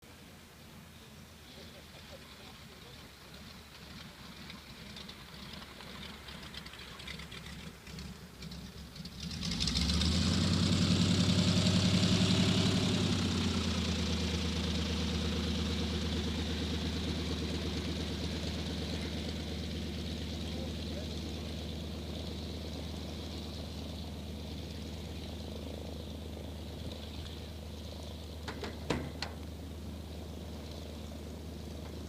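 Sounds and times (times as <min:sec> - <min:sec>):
aircraft engine drone: 0:00.1 - 0:32.0.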